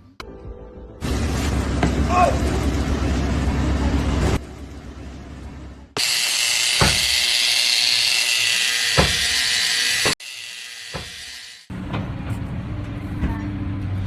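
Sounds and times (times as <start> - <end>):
power tool whining: 6.0 - 11.7.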